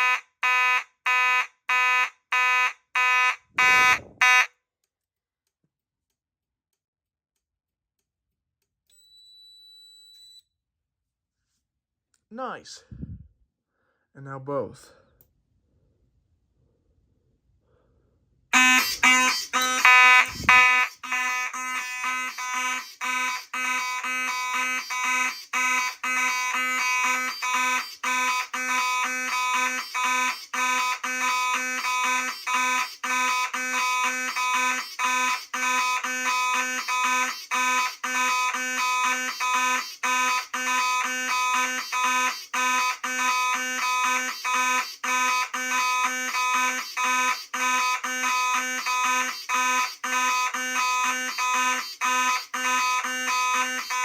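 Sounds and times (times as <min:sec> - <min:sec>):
fire alarm horns buzzing: 0:00.0 - 0:04.5, 0:18.5 - 0:54.0.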